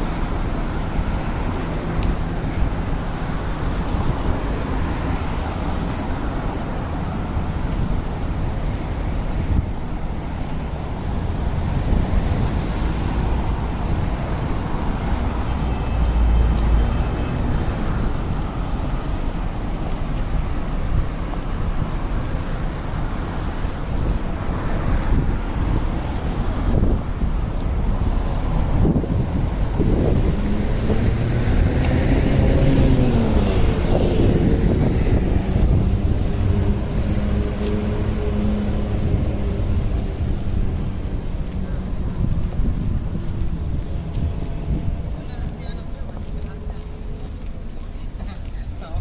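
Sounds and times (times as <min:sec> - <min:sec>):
city street traffic rumble: 0:00.0 - 0:49.0
wind buffeting microphone: 0:00.0 - 0:49.0
vehicle passing: 0:11.0 - 0:22.4, 0:23.1 - 0:49.0.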